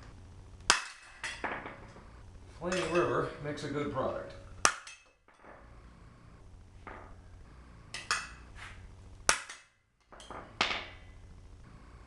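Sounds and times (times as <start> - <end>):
hammer striking metal: 4.6 - 5.6, 9.3 - 10.9.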